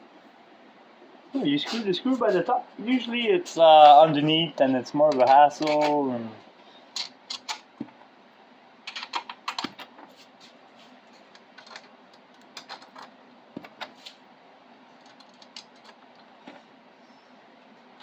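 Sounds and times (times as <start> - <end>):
faint background hum: 0.0 - 18.0
small parts clicking and tapping: 5.1 - 5.9, 6.9 - 7.9, 11.3 - 13.9, 15.0 - 16.3.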